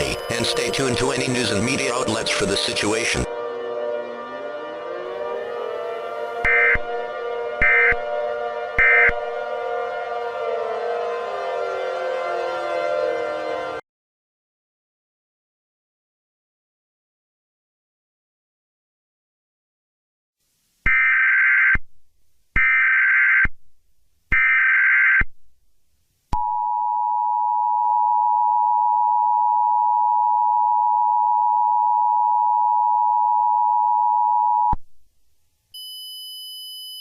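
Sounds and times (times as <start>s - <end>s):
data tone bursts: 0.0s - 2.8s
two-tone attention signal: 0.0s - 3.2s
high steady tone: 0.0s - 10.4s.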